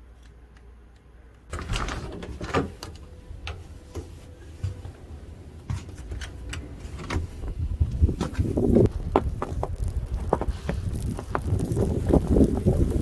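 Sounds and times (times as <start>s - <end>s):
wind buffeting microphone: 4.4s - 13.0s.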